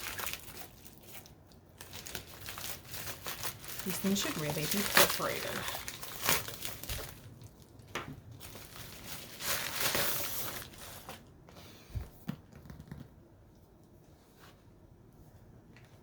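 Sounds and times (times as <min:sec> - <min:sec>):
packaging torn and crinkled: 0:00.0 - 0:11.2.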